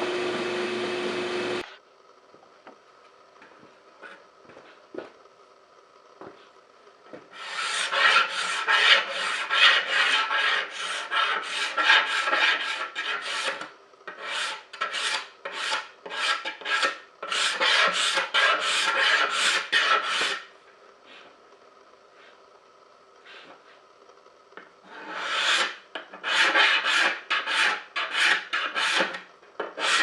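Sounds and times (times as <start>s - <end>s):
tool rasping wood: 7.3s - 20.5s, 24.9s - 30.0s.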